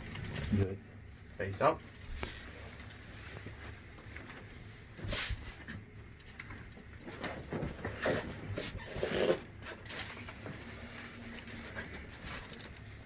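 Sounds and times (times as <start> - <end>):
faint handling sounds: 0.1 - 13.0
rustling: 6.6 - 13.0.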